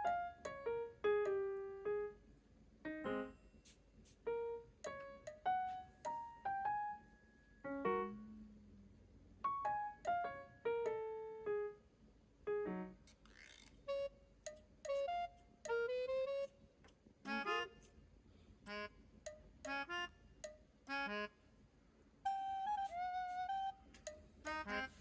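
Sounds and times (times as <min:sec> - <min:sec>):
light piano melody: 0:00.0 - 0:02.3, 0:02.9 - 0:08.3, 0:09.4 - 0:11.9, 0:12.5 - 0:13.1, 0:22.3 - 0:25.0.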